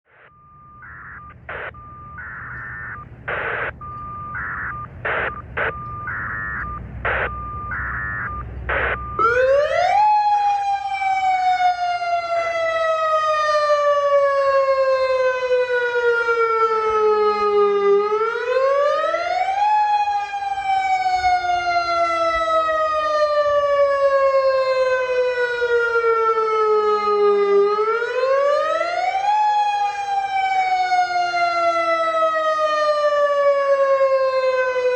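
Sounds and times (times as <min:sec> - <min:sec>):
warning siren wailing: 0:00.1 - 0:34.9
steady high tone with noisy bursts: 0:00.2 - 0:09.2.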